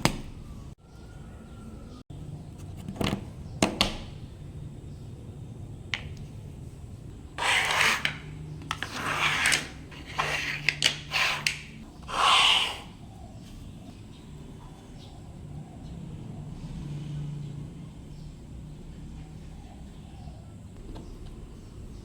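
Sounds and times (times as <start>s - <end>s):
rubbing and scraping: 7.4s - 12.9s.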